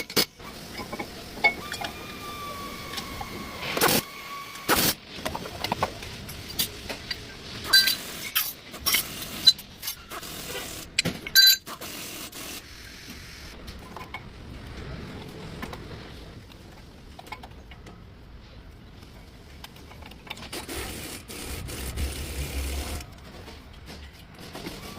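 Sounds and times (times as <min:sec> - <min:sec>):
metal tools clinking: 0:06.4 - 0:10.1, 0:11.2 - 0:11.8.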